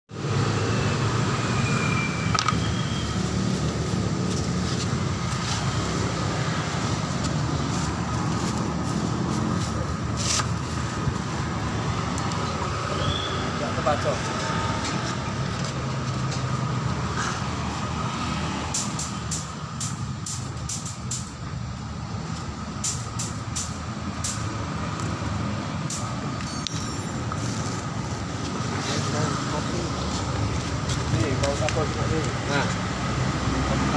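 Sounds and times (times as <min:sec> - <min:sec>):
sharp click: 0:22.8 - 0:25.2.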